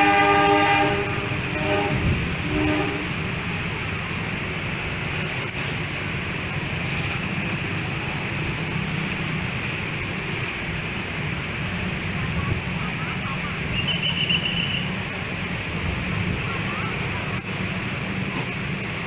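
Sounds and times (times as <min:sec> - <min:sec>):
diesel locomotive horn: 0:00.0 - 0:03.4
train rumbling along track: 0:00.0 - 0:19.0.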